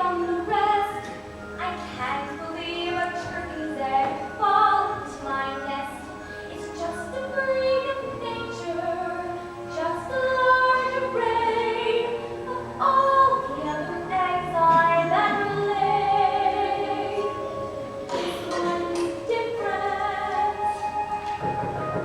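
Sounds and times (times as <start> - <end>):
musical accompaniment: 0.0 - 22.0
voices singing show tune: 6.6 - 21.4.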